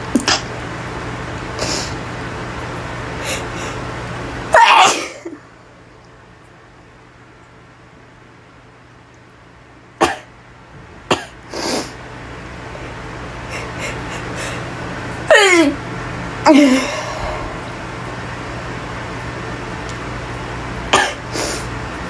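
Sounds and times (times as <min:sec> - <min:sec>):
woman sneezing: 0:04.6 - 0:05.3, 0:15.3 - 0:15.8.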